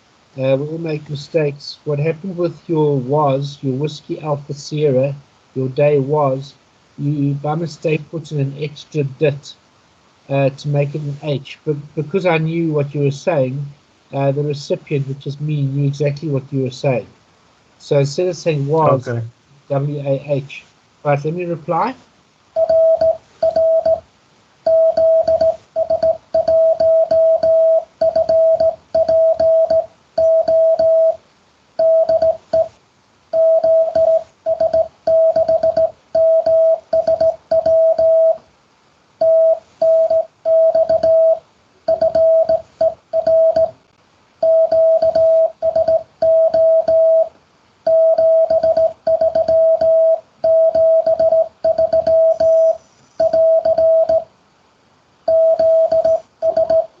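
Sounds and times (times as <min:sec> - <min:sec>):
morse code beeps: 0:22.6 - 0:24.0, 0:24.7 - 0:31.2, 0:31.8 - 0:32.7, 0:33.4 - 0:38.4, 0:39.2 - 0:43.8, 0:44.4 - 0:47.3, 0:47.9 - 0:54.3, 0:55.3 - 0:57.0.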